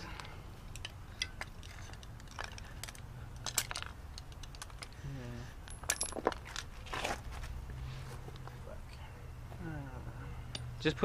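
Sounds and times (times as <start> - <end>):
hand tools clicking and clattering: 0.0 - 7.2.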